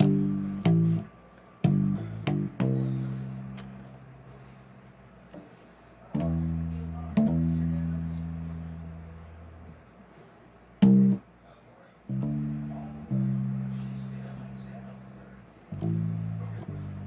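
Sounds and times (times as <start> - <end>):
bass guitar plucked notes: 0.0 - 4.4, 6.1 - 9.8, 10.8 - 11.2, 12.1 - 17.0.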